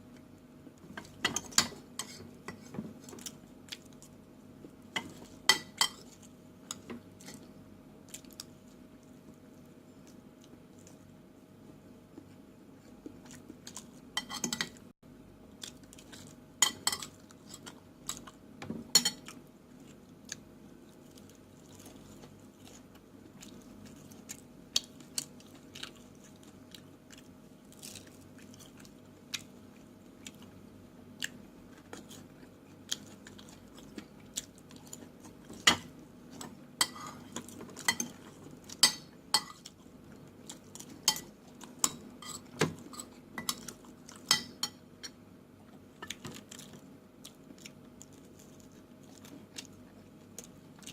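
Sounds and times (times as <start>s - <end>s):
faint steady hum: 0.0s - 50.9s
cutlery scraping on a plate: 14.2s - 14.8s, 36.8s - 38.2s
chewing with mouth clicks: 19.2s - 30.6s, 31.2s - 35.6s, 45.6s - 50.9s.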